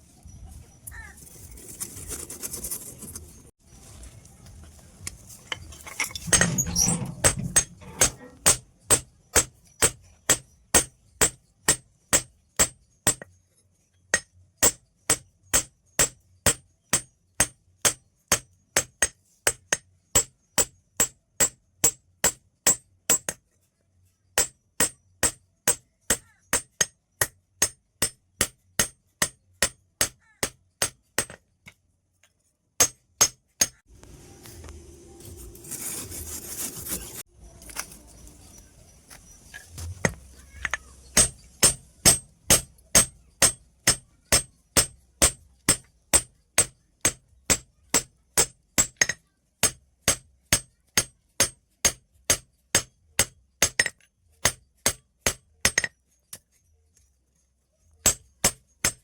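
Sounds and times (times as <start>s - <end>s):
hammer striking steel on anvil: 6.0s - 13.3s, 24.4s - 31.4s, 32.8s - 33.8s, 40.0s - 55.9s.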